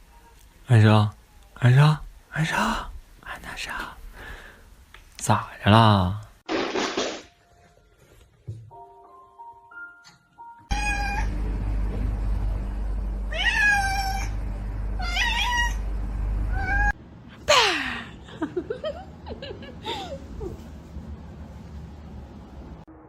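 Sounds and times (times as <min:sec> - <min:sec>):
cat meowing: 0:10.7 - 0:11.3, 0:13.3 - 0:14.4, 0:15.0 - 0:15.8
low rumble: 0:11.2 - 0:13.4.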